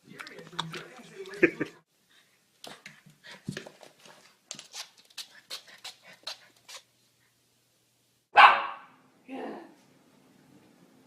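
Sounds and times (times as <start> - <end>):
dog panting and sniffing: 2.6 - 6.9.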